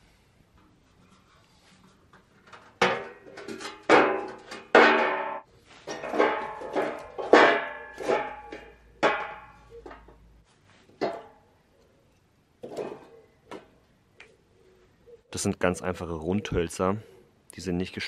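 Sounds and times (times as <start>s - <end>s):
firewood logs knocking together: 2.8s - 10.2s.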